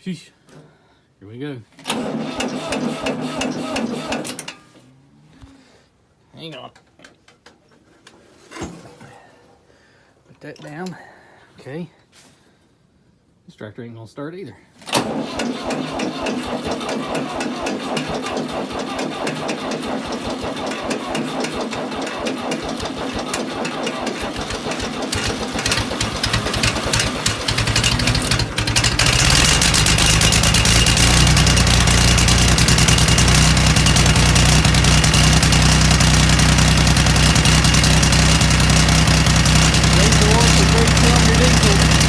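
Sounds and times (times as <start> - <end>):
tractor engine cranking: 1.8 - 4.8, 14.8 - 42.0
tractor engine running: 1.9 - 4.6, 14.9 - 42.0.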